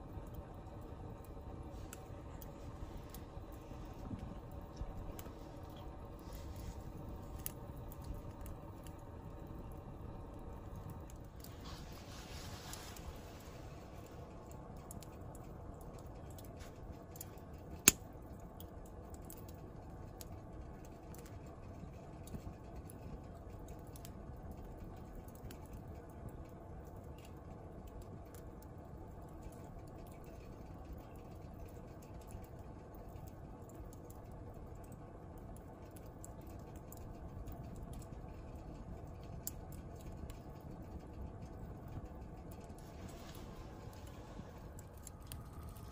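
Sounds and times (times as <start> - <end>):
wood fire crackling: 0.0 - 45.9.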